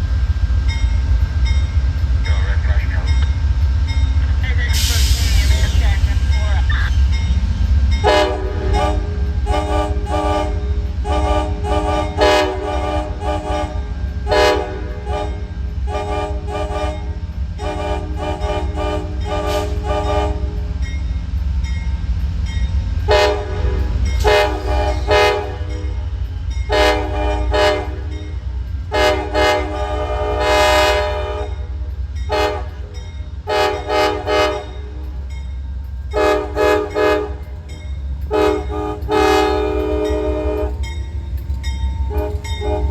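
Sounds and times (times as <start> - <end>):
locomotive engine rumble: 0.0 - 42.9
locomotive air horn toots: 8.0 - 20.8, 23.1 - 26.1, 26.7 - 28.3, 28.9 - 35.0, 36.1 - 37.5, 38.3 - 41.0, 42.1 - 42.9.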